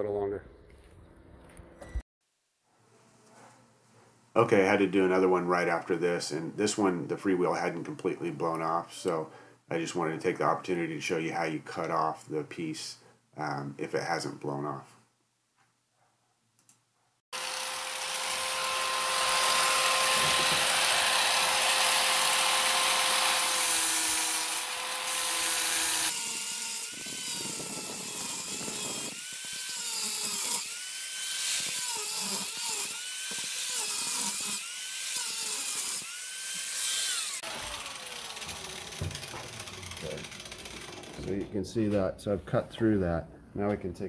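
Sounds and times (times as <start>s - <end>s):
power tool cutting metal: 17.4s - 41.4s.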